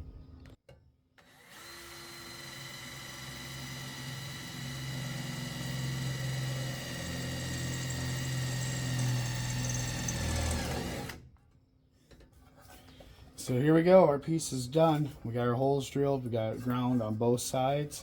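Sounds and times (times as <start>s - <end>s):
power tool motor whining: 1.2s - 11.2s.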